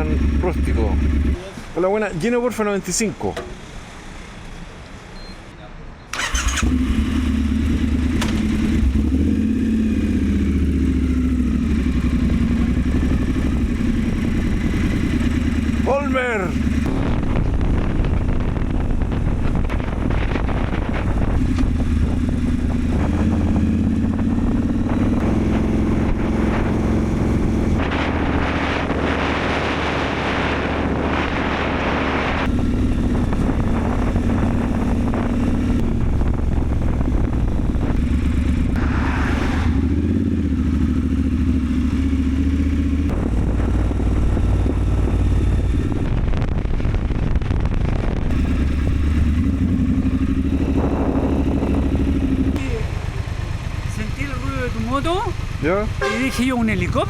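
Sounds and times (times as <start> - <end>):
motorcycle engine running: 0.0 - 1.4, 6.2 - 57.0
wind rushing: 16.6 - 41.6, 43.0 - 52.6.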